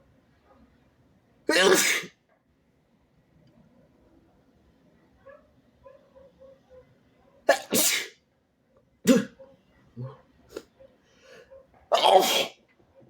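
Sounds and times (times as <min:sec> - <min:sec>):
person sneezing: 0:01.5 - 0:02.1, 0:07.5 - 0:08.2, 0:09.1 - 0:09.4, 0:11.9 - 0:12.6
catching breaths: 0:10.5 - 0:11.8.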